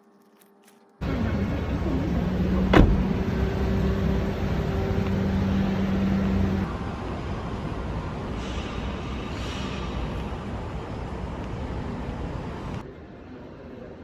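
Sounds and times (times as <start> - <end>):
steady hum: 1.0 - 6.7
vehicle engine rumble: 1.0 - 6.7.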